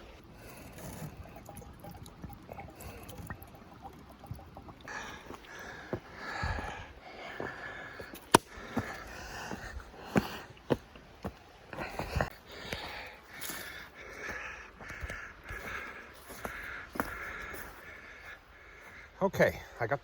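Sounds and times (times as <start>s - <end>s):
water splashing and trickling: 0.0s - 14.4s.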